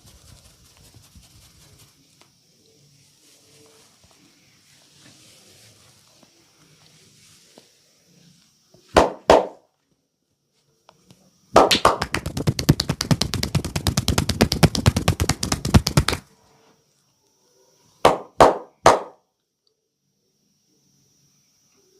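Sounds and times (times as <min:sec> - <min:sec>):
hands chopping on body: 0:09.0 - 0:09.6, 0:11.6 - 0:16.2, 0:18.1 - 0:19.2
sharp slaps: 0:09.0 - 0:09.6, 0:11.6 - 0:16.2, 0:18.0 - 0:19.2.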